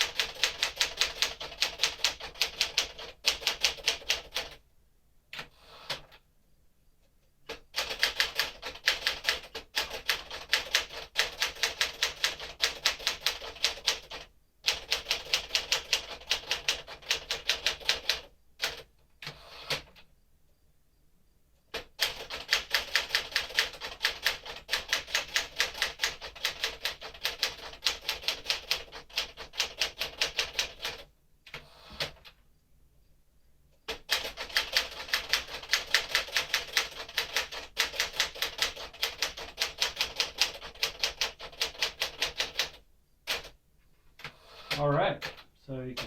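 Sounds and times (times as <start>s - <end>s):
typewriter keystroke clicks: 33.9s - 43.6s.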